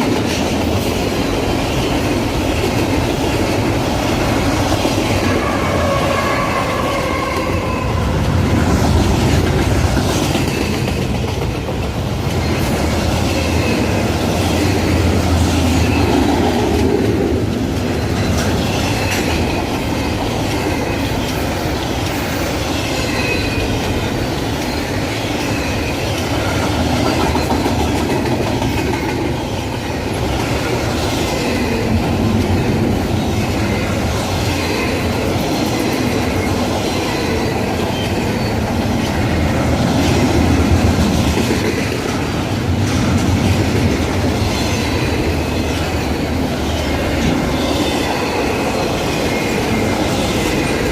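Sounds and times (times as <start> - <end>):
wheels clacking over rail joints: 8.1 - 50.9
high wheel squeal: 22.5 - 26.6, 35.8 - 39.3.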